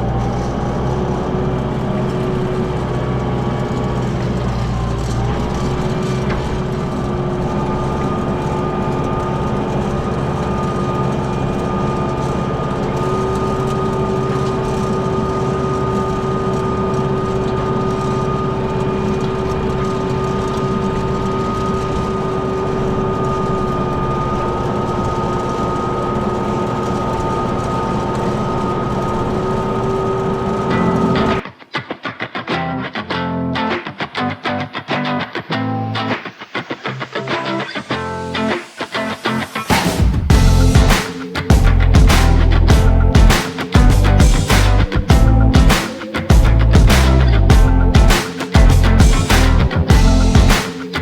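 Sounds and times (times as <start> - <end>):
tractor engine running under load: 0.0 - 31.2, 40.3 - 50.6
high whine from driveline: 0.0 - 31.4, 34.2 - 51.0.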